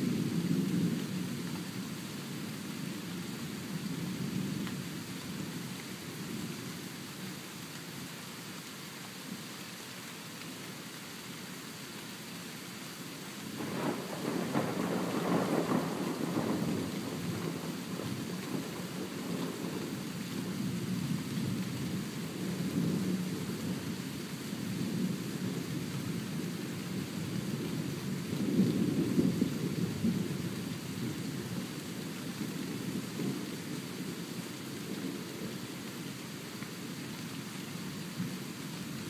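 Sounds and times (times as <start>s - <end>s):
rain hissing: 0.0s - 39.0s
thunder rumbling: 13.6s - 20.0s.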